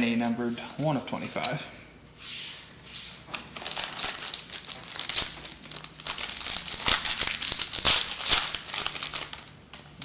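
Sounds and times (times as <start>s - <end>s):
wrapper tearing and crinkling: 3.3s - 10.0s.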